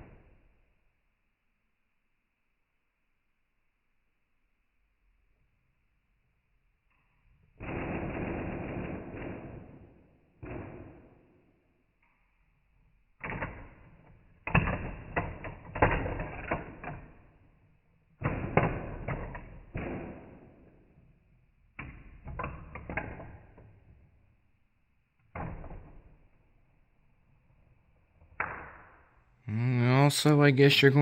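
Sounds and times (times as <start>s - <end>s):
marbles clacking through wooden run: 13.2s - 17.5s, 21.8s - 24.0s.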